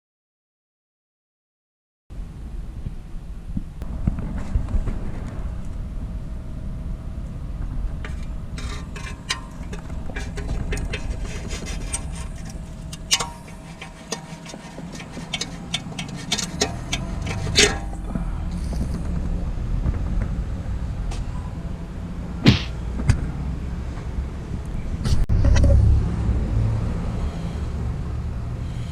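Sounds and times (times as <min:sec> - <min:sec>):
car low rumble: 0:02.2 - 0:28.9
suspension clicks and knocks: 0:07.9 - 0:18.0.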